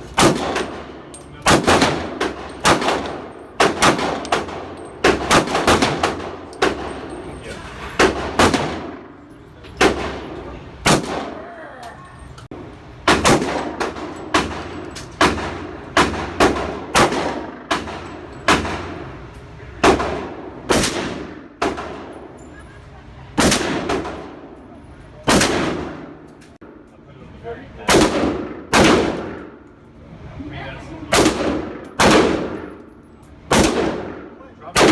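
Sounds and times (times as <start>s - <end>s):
gunshots with echo: 0.2s - 7.0s, 31.1s - 32.7s, 33.5s - 34.9s.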